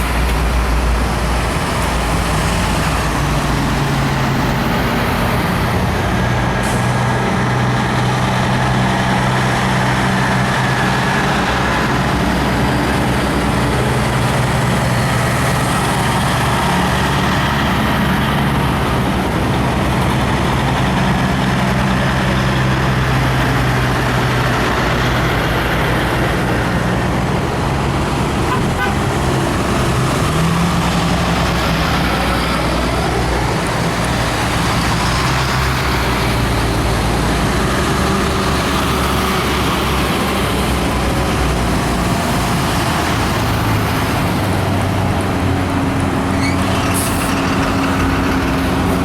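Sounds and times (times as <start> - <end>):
diesel truck engines droning: 0.0 - 49.0.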